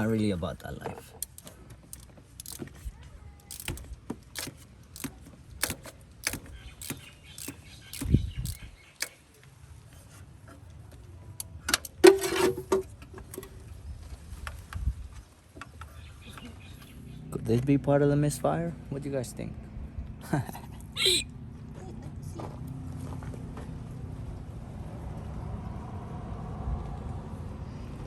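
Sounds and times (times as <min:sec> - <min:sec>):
metal tools clinking: 0:00.6 - 0:09.4
metal rattle: 0:00.7 - 0:09.4.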